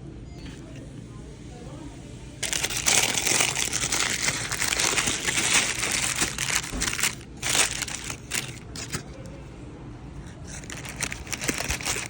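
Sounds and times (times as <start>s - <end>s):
food wrapper crinkling: 2.4s - 9.2s, 10.5s - 12.0s.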